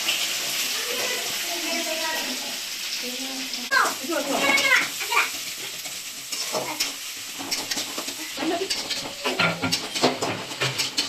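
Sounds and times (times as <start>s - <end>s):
food sizzling: 0.0s - 11.0s
spoon scraping a pan: 4.1s - 11.0s.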